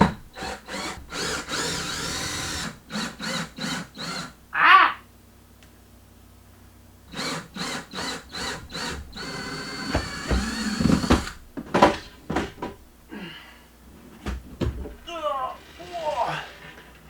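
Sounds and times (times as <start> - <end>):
power drill running: 0.3 - 4.4, 7.1 - 11.4.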